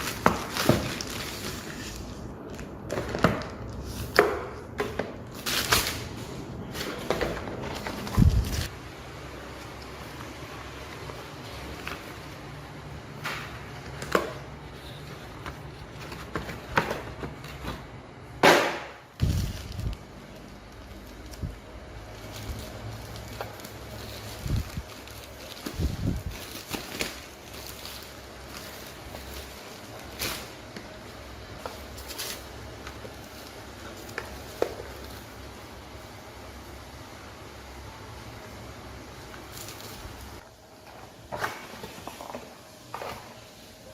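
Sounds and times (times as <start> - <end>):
packaging rustling: 0.0 - 4.2, 5.2 - 8.7, 13.6 - 18.0, 19.2 - 35.6, 39.2 - 43.4
low background hum: 0.0 - 43.9.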